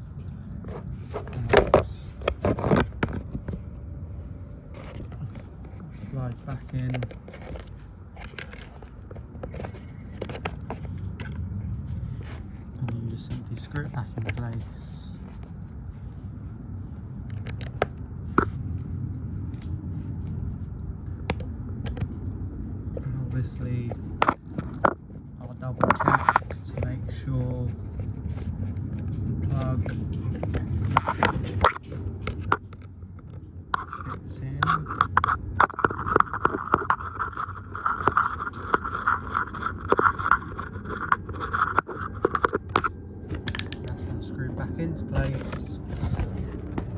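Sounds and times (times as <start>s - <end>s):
handling noise: 0.0s - 15.9s, 21.2s - 46.9s
low steady hum: 0.0s - 46.9s
screwdriver clicking and scraping: 6.5s - 11.4s, 25.8s - 44.1s.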